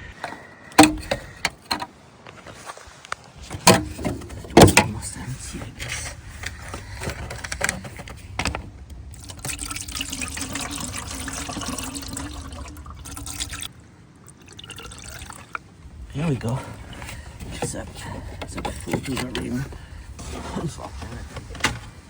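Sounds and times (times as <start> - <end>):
fluid pouring into reservoir: 9.1 - 15.6.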